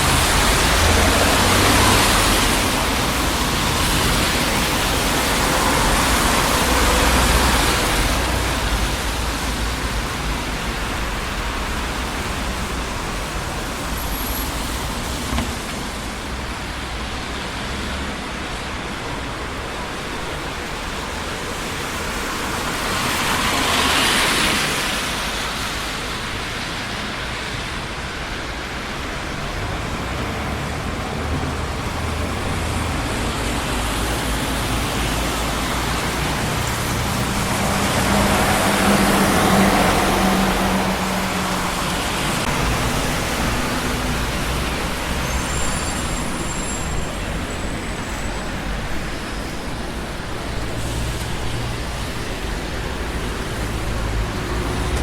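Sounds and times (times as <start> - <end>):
city street traffic: 0.0 - 55.0
vehicles passing close by: 0.0 - 55.0.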